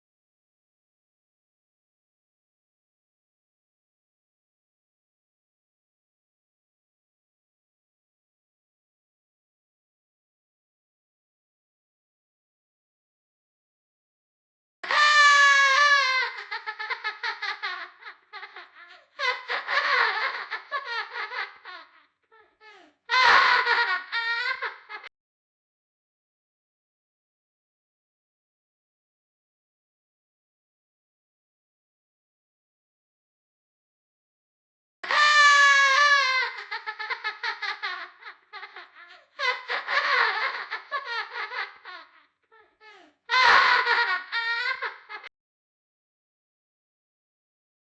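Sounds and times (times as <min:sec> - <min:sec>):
child laughing: 0:14.8 - 0:25.1, 0:35.0 - 0:45.3.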